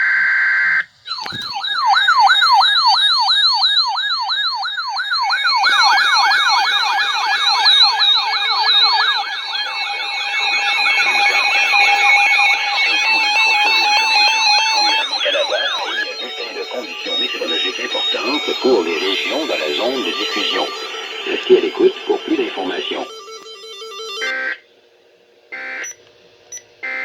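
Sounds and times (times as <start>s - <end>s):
electronic sirens yelping: 0.7s - 24.6s, 25.5s - 27.0s
steady electronic alert tone: 8.2s - 24.6s.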